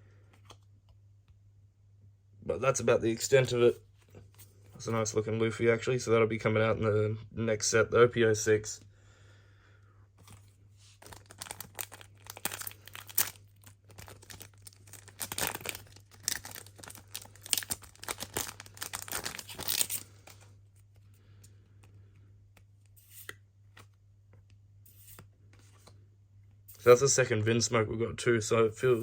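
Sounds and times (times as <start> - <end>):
faint handling sounds: 3.3 - 5.1, 10.1 - 27.2
foil wrapper crinkling: 10.9 - 21.0.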